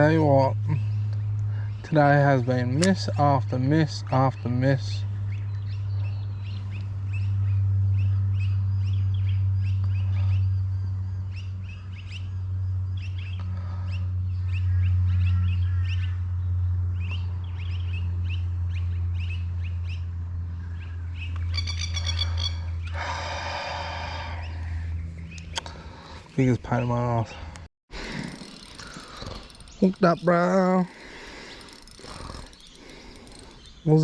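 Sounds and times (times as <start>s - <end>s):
small birds chirping: 0.0s - 34.0s
steady low hum: 0.0s - 34.0s.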